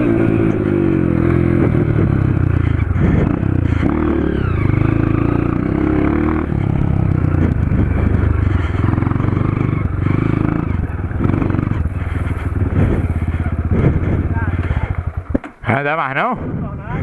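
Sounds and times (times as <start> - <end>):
dirt bike engine revving: 0.0 - 15.9.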